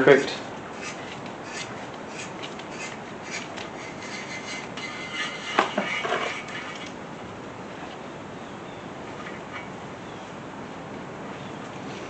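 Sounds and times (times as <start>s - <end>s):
metal tap ticking and scraping: 0.8s - 7.0s
metal clatter: 3.4s - 7.0s.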